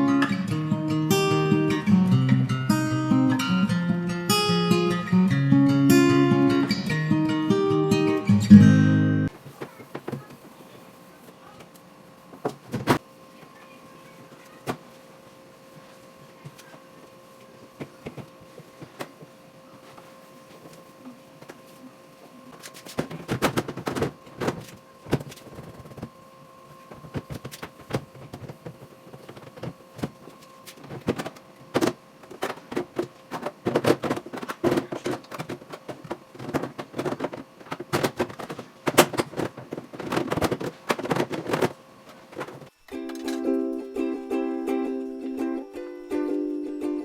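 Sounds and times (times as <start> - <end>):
ukulele music: 0.0 - 9.3, 42.8 - 47.0
faint steady hum: 0.0 - 47.0
household items clattering: 22.5 - 26.1, 26.8 - 43.4.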